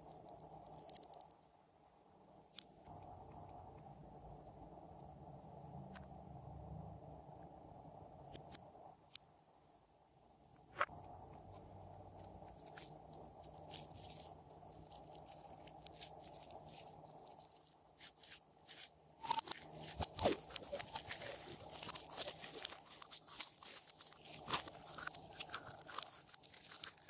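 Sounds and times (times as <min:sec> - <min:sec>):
hands squishing slime: 0:12.2 - 0:27.0.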